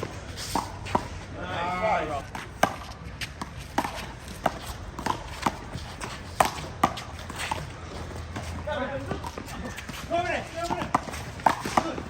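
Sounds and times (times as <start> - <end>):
ball smacking off wall and pavement: 10.1 - 12.0.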